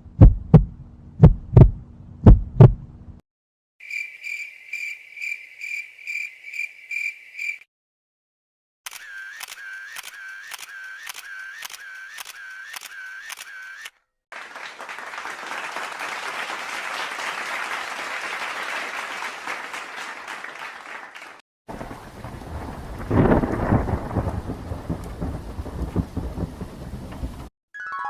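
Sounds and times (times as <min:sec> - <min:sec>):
camera shutter clicking: 0:08.9 - 0:13.9
crowd applauding: 0:14.3 - 0:21.9.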